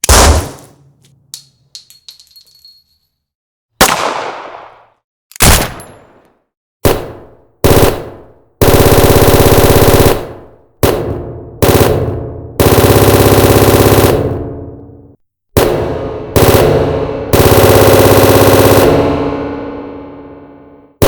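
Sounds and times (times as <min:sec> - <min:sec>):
single gunshots with echo: 0:03.8 - 0:06.2.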